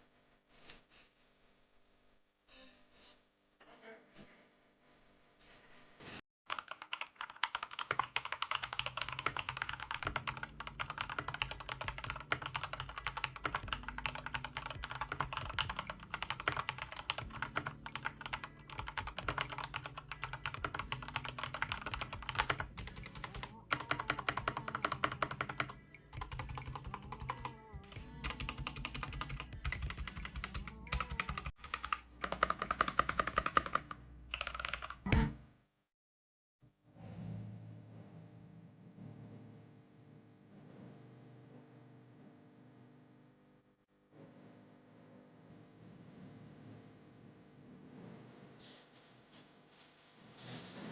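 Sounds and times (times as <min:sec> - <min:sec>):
mechanical keyboard typing: 0:06.5 - 0:35.0.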